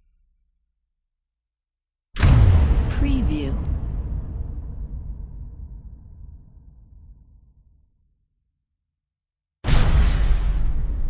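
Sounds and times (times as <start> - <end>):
cinematic boom hit: 2.2 - 7.2, 9.6 - 11.0.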